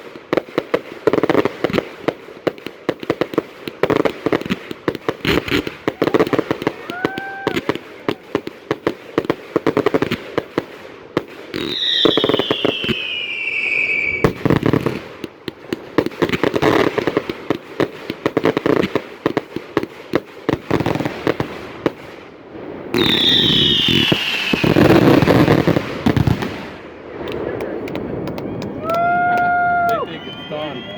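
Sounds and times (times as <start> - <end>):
fireworks bangs and crackle: 0.0 - 30.9
firework whistle falling in pitch: 6.0 - 7.8, 11.7 - 14.4, 23.0 - 24.8, 28.3 - 30.9.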